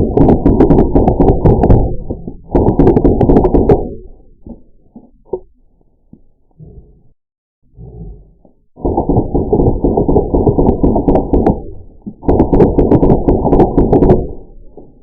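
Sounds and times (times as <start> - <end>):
bb gun firing bursts: 0.0 - 4.0, 8.8 - 14.5.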